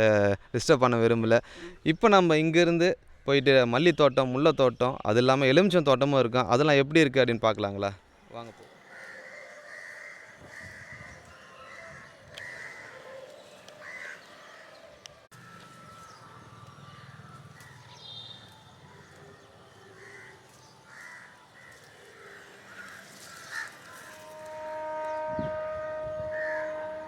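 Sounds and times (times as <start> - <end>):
crows cawing: 8.5 - 25.2, 26.3 - 27.0.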